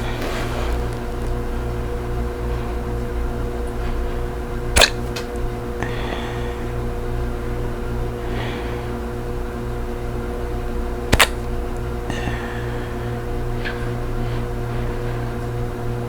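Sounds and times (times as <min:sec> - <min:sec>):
steady hum: 0:00.0 - 0:16.0
woman hiccuping: 0:04.8 - 0:05.1.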